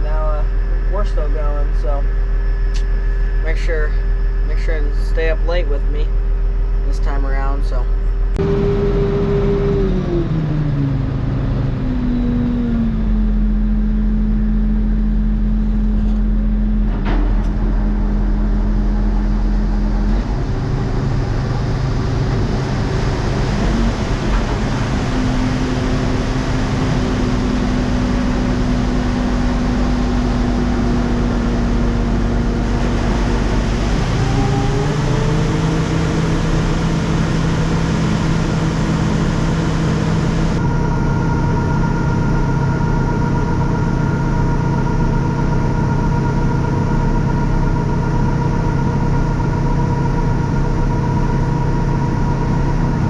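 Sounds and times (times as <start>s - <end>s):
tractor engine under load: 15.4s - 41.6s.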